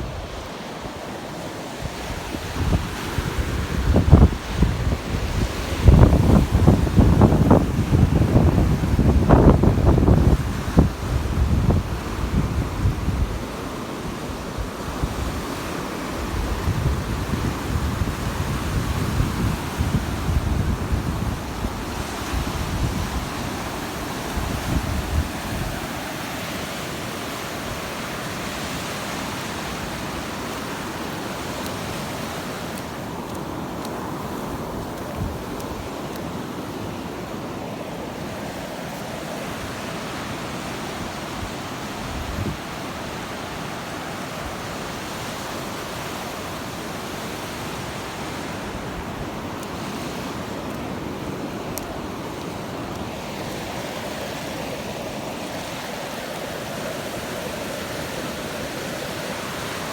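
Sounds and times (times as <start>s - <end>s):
surf breaking on a beach: 0.0s - 59.9s
wind buffeting the microphone: 1.8s - 26.5s, 28.6s - 37.4s, 39.4s - 43.7s.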